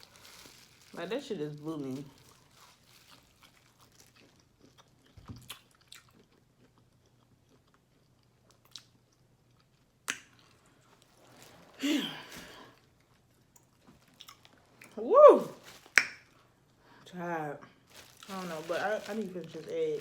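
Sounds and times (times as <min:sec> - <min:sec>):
person chewing: 0:02.4 - 0:10.8, 0:12.1 - 0:15.0.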